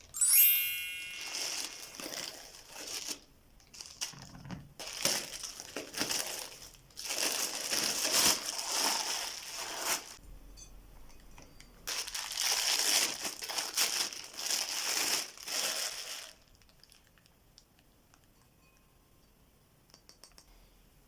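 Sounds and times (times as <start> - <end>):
packaging crinkling: 1.1 - 10.2, 11.9 - 17.4.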